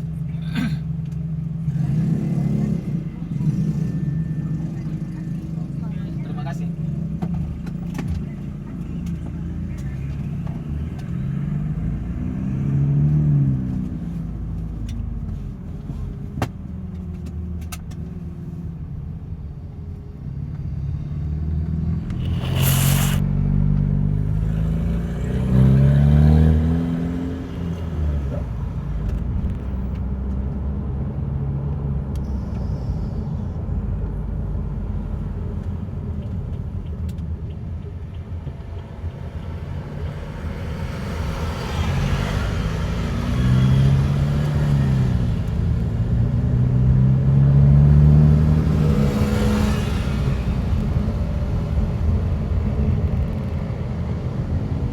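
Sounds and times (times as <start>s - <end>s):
car engine accelerating: 0.0s - 18.6s, 20.2s - 54.9s
short loud hiss: 22.1s - 23.2s.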